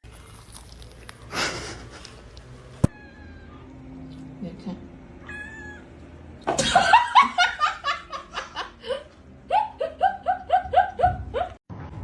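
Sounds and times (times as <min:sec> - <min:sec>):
person laughing hard: 0:06.6 - 0:11.6.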